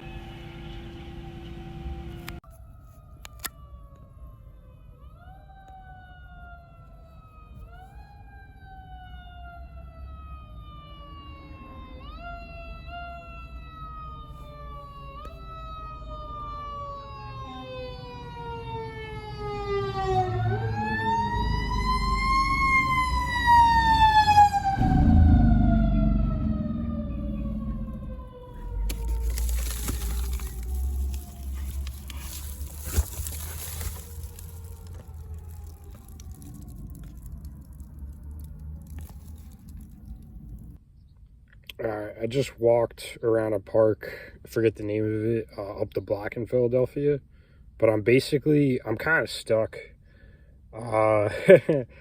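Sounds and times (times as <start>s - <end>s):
emergency siren wailing: 0.0s - 40.8s
low vehicle rumble: 19.3s - 40.8s.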